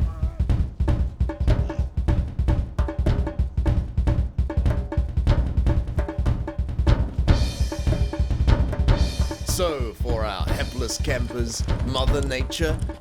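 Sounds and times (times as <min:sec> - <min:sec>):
drum beat music: 0:00.0 - 0:13.0
cymbal wash: 0:07.3 - 0:13.0.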